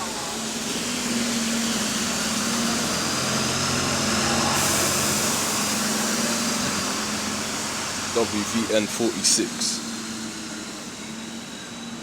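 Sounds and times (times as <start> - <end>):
bus engine humming: 0.0 - 12.0.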